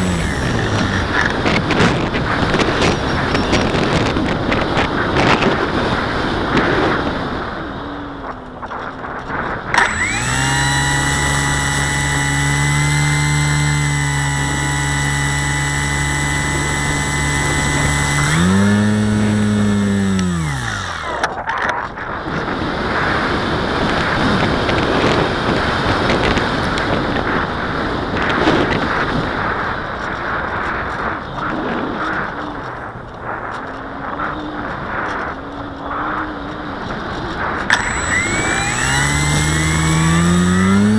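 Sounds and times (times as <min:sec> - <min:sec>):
electric motor and propeller whine: 0:00.0 - 0:40.9
wind rushing over microphone: 0:00.0 - 0:40.9.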